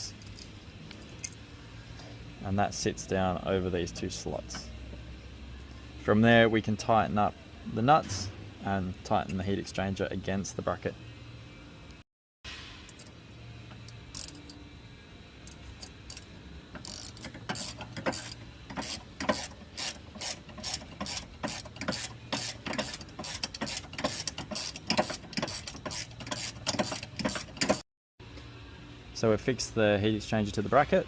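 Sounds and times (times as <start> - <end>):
socket ratchet clicking: 15.5 - 27.8.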